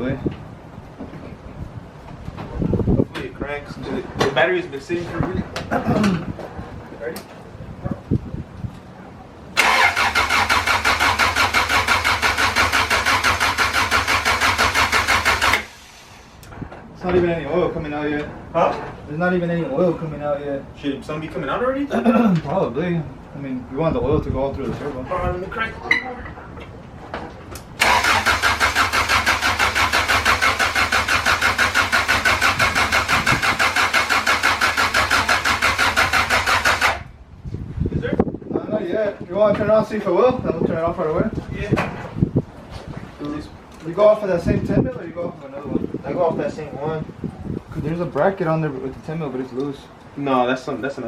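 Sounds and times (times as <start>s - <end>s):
engine cranking by starter: 9.6s - 16.6s, 27.8s - 37.1s.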